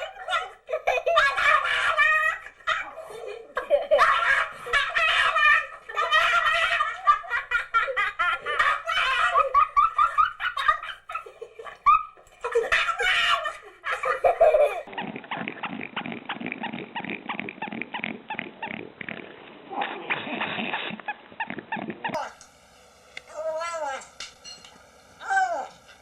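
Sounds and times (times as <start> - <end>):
high-pitched laughter: 0.0 - 15.5.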